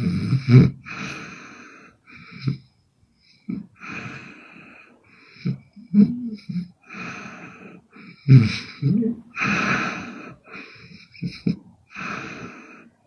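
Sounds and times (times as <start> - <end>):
woman snoring: 0.0 - 1.6, 5.4 - 12.9.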